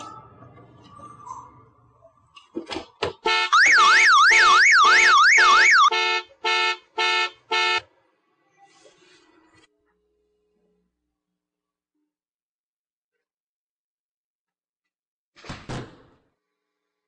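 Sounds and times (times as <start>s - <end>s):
car alarm siren warbling: 3.5s - 5.9s.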